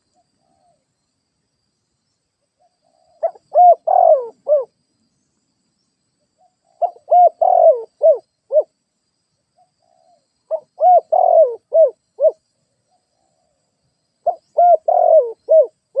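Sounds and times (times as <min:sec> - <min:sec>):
dove cooing: 0:02.8 - 0:04.7, 0:06.6 - 0:08.7, 0:09.8 - 0:12.4, 0:14.2 - 0:16.0.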